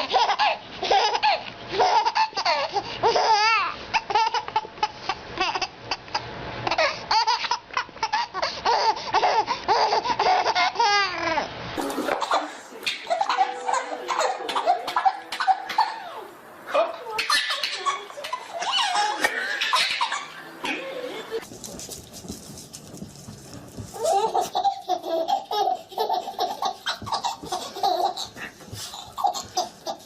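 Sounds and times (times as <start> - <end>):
baby laughing hysterically: 0.0 - 11.2, 11.8 - 16.3, 17.2 - 21.4, 24.0 - 30.0
baby squealing: 17.2 - 21.4.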